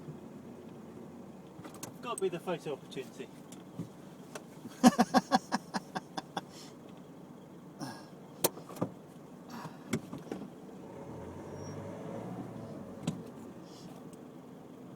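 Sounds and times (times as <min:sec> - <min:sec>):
clicks and knocks inside car: 0:03.4 - 0:04.6, 0:08.4 - 0:10.6, 0:13.0 - 0:13.4
electric window motor: 0:10.8 - 0:13.6.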